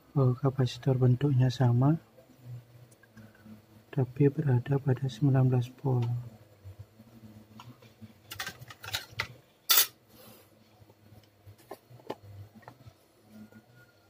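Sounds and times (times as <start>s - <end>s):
faint low hum: 0.0s - 14.0s
small tools clattering: 8.3s - 10.0s.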